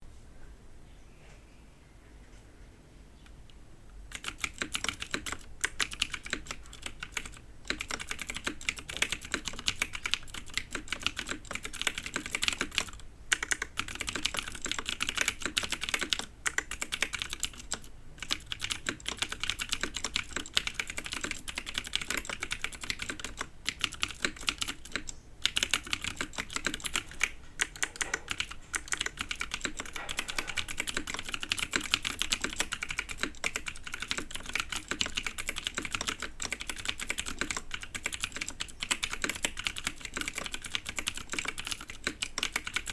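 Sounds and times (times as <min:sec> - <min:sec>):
mechanical keyboard typing: 0:04.1 - 0:42.9.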